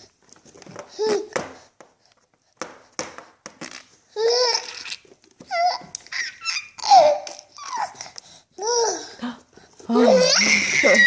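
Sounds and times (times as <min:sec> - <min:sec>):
baby laughing: 0:04.2 - 0:09.0, 0:10.0 - 0:11.0.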